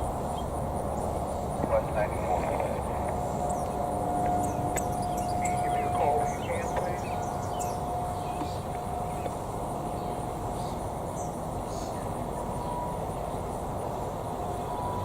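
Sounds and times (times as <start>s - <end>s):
distant tornado sirens: 0.0s - 15.0s
faint insect chirping: 3.1s - 15.0s.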